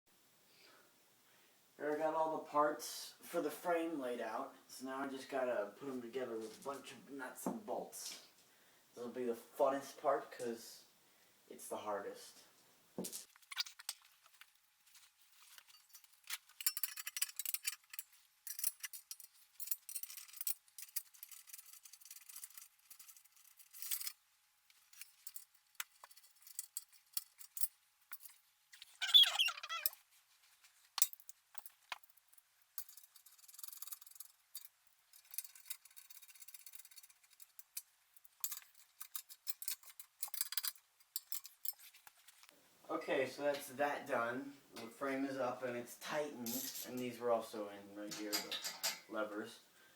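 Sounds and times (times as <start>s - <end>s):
metal parts clinking: 15.4s - 24.2s, 24.8s - 30.0s, 31.0s - 42.0s, 46.4s - 47.0s, 48.1s - 49.1s
brief scraping squeak: 28.8s - 30.0s.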